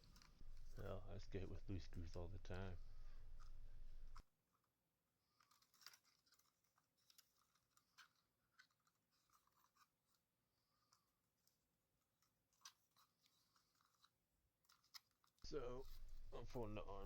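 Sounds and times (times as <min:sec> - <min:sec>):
plastic drone clicks and scratches: 0:05.3 - 0:10.3, 0:10.9 - 0:16.5.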